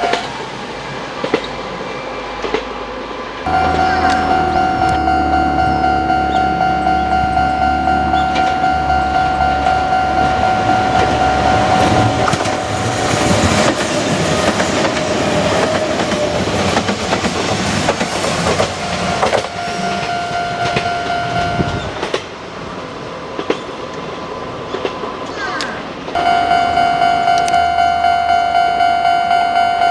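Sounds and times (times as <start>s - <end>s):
level crossing alarm bell ringing: 3.5s - 13.2s, 18.6s - 22.0s, 26.2s - 29.9s
electric train running: 3.5s - 22.4s.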